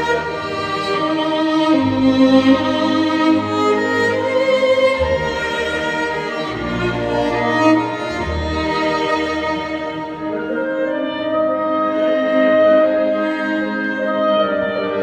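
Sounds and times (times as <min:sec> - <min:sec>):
held string chords: 0:00.0 - 0:10.6
solo violin melody: 0:00.0 - 0:15.0.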